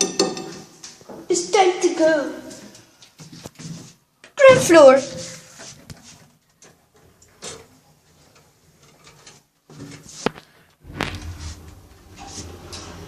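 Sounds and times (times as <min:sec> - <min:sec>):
lift doors humming: 0:10.8 - 0:13.0.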